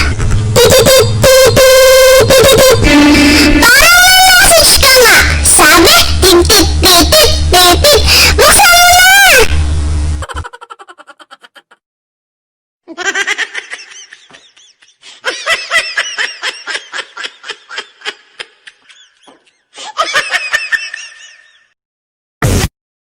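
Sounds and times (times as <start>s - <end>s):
laughter sound effects: 0.1s - 1.2s, 10.2s - 11.8s, 12.9s - 21.8s.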